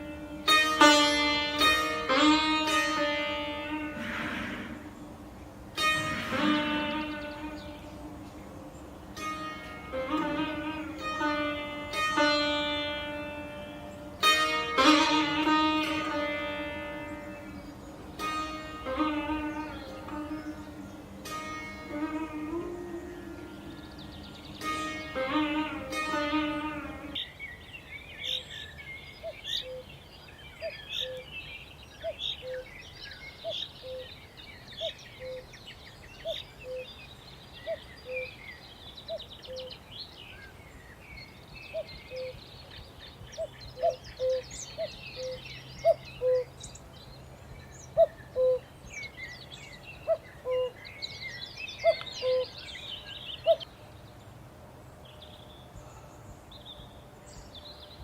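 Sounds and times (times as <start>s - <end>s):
birds chirping and trilling: 0.0s - 58.0s
bird two-note call: 5.8s - 27.3s, 51.4s - 53.7s.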